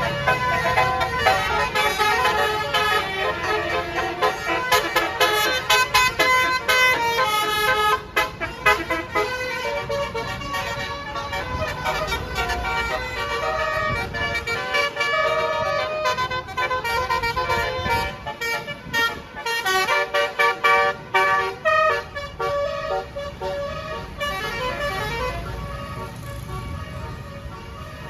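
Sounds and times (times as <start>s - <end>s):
bus horn playing a tune: 0.0s - 28.0s.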